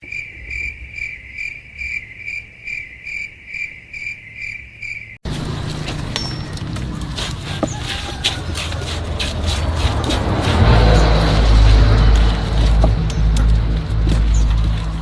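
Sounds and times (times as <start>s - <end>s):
cricket chirping: 0.0s - 5.2s.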